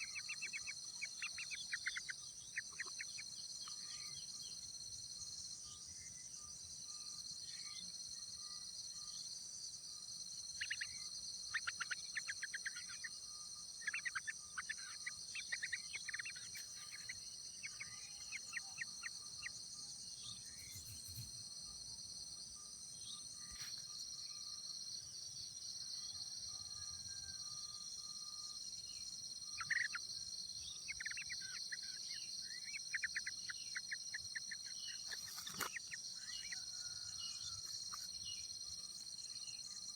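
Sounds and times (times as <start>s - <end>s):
rapid bird chirping: 0.0s - 5.0s, 10.4s - 21.6s, 28.8s - 39.9s.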